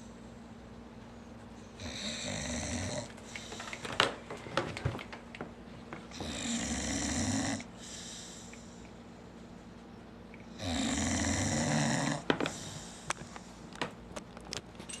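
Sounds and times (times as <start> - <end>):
dog snoring: 1.8 - 3.2, 6.1 - 8.1, 10.5 - 12.9.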